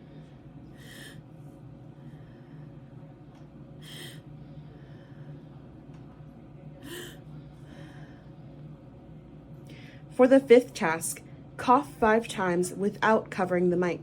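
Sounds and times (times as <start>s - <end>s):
person exhaling: 3.8s - 4.2s.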